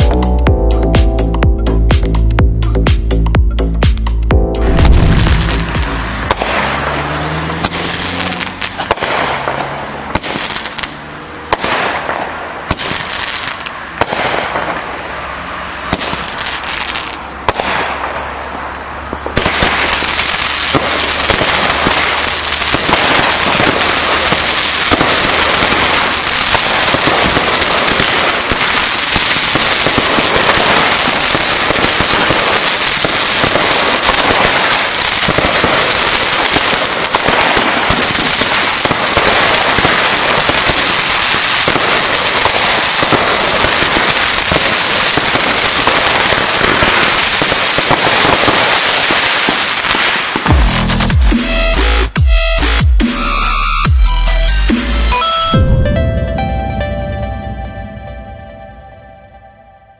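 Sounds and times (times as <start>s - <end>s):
firework launches and bursts: 4.6s - 18.5s, 19.1s - 51.6s
dense firework crackling: 4.6s - 51.5s.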